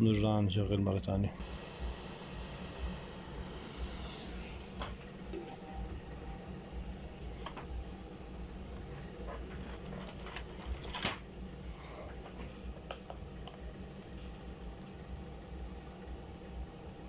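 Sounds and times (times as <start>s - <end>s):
low hum: 0.0s - 17.0s
handling noises: 8.7s - 13.6s.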